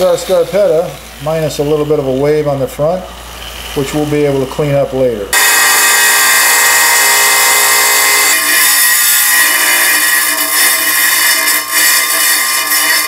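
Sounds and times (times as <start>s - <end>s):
rotary tool grinding stone: 5.4s - 13.0s.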